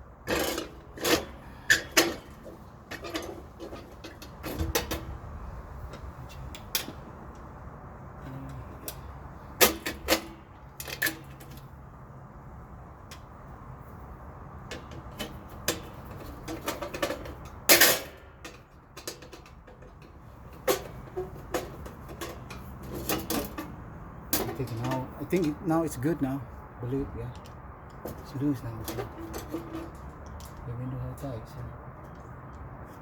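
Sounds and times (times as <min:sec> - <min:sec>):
metal clatter: 0:14.6 - 0:25.6, 0:27.4 - 0:30.6.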